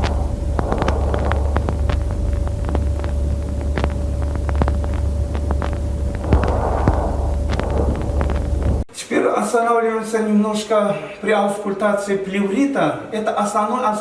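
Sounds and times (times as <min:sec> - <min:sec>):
low hum: 0:00.0 - 0:08.9
scattered clicks: 0:00.0 - 0:08.9.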